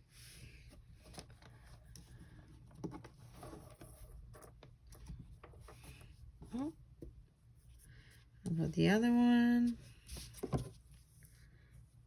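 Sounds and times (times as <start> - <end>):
soft paper rustles: 9.6 - 11.5.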